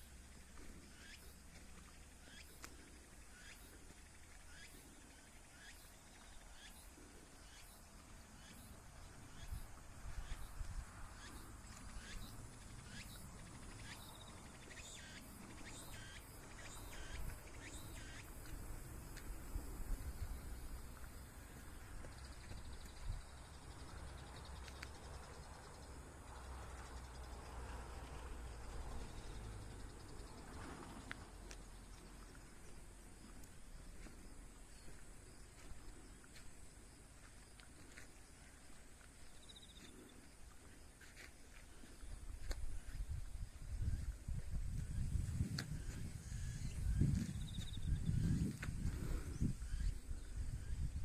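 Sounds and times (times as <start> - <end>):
insects chirping: 0.0 - 51.0
bird calling: 0.9 - 1.4, 2.1 - 19.2.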